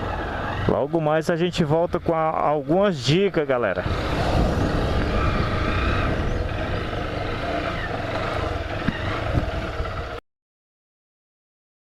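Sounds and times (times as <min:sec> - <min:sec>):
motorcycle engine and road rumble: 0:00.0 - 0:10.2.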